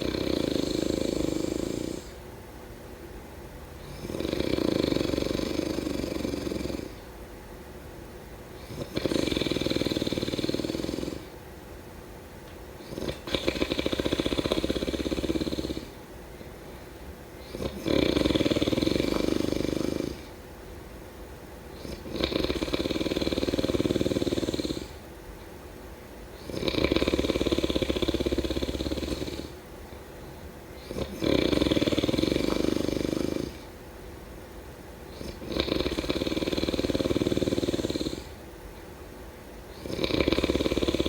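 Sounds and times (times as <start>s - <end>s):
person snoring: 0.0s - 2.2s, 3.8s - 7.0s, 8.6s - 11.3s, 12.8s - 16.0s, 17.4s - 20.3s, 21.8s - 25.0s, 26.4s - 29.6s, 30.8s - 33.7s, 35.1s - 38.4s, 39.7s - 41.0s.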